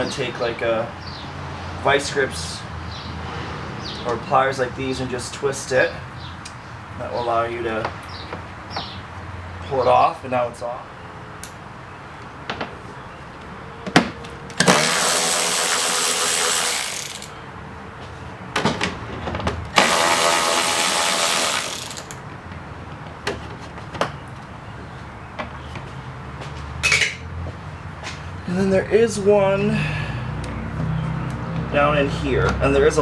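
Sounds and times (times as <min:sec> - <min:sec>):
handheld power tool running: 0:14.6 - 0:17.4, 0:19.8 - 0:22.2
metal tools clicking and knocking: 0:26.8 - 0:27.2.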